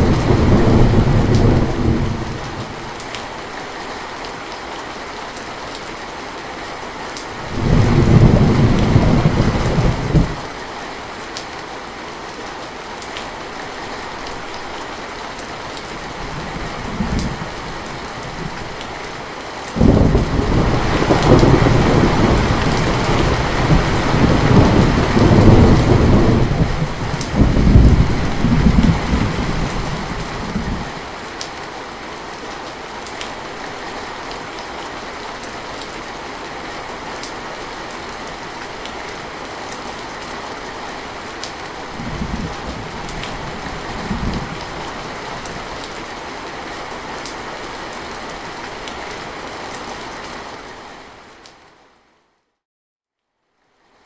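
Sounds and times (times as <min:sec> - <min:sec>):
thunder rumbling: 0:00.0 - 0:02.9, 0:07.4 - 0:10.5, 0:19.8 - 0:31.0, 0:42.0 - 0:45.5
steady rain: 0:00.0 - 0:52.4, 0:53.4 - 0:54.0.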